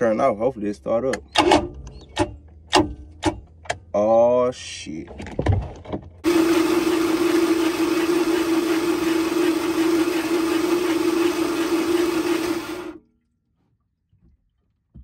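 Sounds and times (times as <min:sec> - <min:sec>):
boat motor running: 0:06.2 - 0:13.0.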